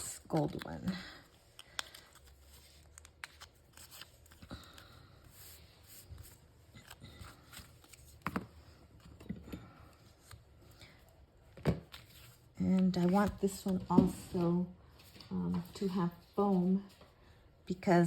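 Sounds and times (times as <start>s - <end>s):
paper rustling: 0.0s - 9.3s.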